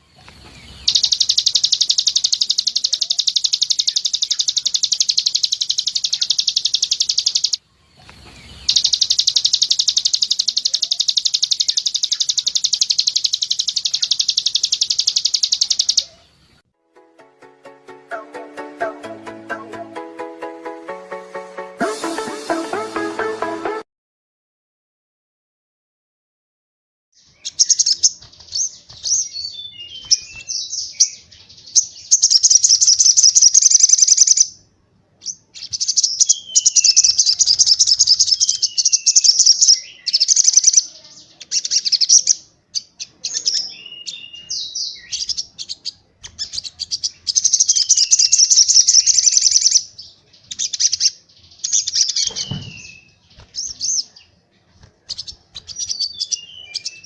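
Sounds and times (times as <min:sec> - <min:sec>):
bird singing rapid trills: 0:00.0 - 0:16.6, 0:27.2 - 0:34.6, 0:35.3 - 0:54.4, 0:55.1 - 0:57.0
bird chirps and falling whistles: 0:00.6 - 0:07.6, 0:08.5 - 0:16.1, 0:36.0 - 0:40.8, 0:51.7 - 0:54.0.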